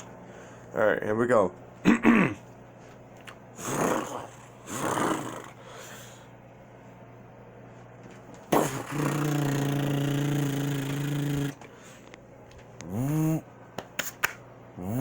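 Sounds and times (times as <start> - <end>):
low vocal hum: 3.5 - 6.3, 8.5 - 11.9, 12.8 - 13.6, 14.7 - 15.0
vocal burst: 3.6 - 5.6, 8.5 - 11.6, 12.8 - 13.5, 14.8 - 15.0
person making vocal sound effects: 8.5 - 11.6, 12.8 - 13.4, 14.8 - 15.0.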